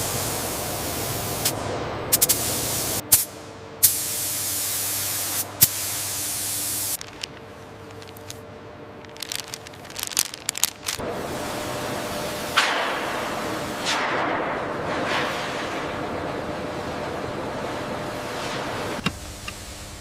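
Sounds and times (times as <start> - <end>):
loud hissing spray: 0.0 - 7.0.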